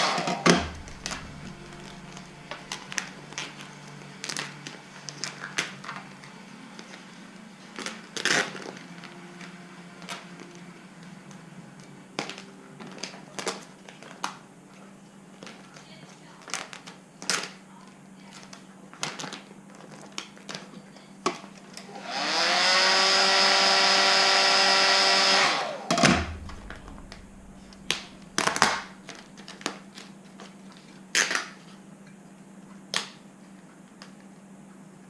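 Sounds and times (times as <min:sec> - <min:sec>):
heat gun fan whine: 0:00.0 - 0:05.2, 0:21.8 - 0:29.4
thump: 0:00.3 - 0:02.3, 0:25.9 - 0:29.3.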